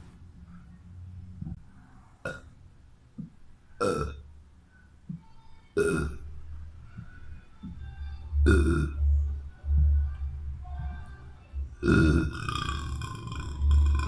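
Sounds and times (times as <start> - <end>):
boy burping: 3.8 - 4.2, 5.8 - 6.2, 11.8 - 14.0.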